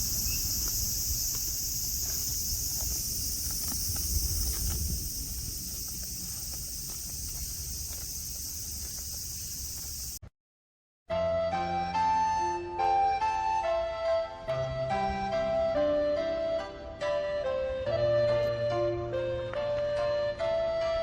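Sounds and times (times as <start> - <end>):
cicadas singing: 0.0 - 10.2
soft background music: 11.1 - 21.0.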